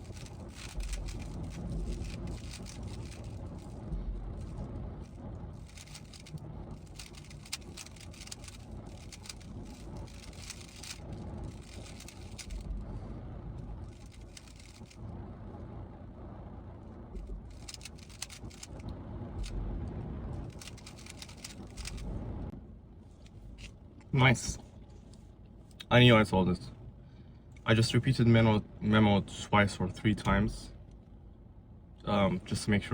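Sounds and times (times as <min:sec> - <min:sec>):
rapid plastic clicking of puzzle cube: 0:00.0 - 0:03.7, 0:05.6 - 0:12.6, 0:13.9 - 0:15.0, 0:17.5 - 0:18.9, 0:20.5 - 0:22.0
low steady rumble: 0:00.0 - 0:32.9.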